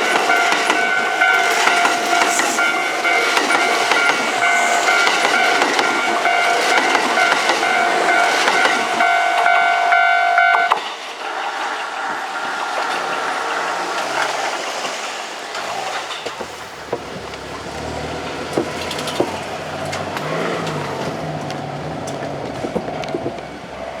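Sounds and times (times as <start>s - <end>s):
level-crossing warning bell: 0.0s - 13.7s.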